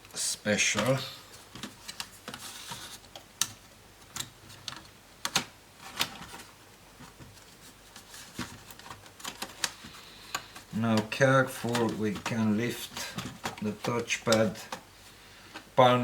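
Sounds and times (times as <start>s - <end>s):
plastic laptop parts clicking: 1.6s - 6.5s, 8.3s - 14.9s.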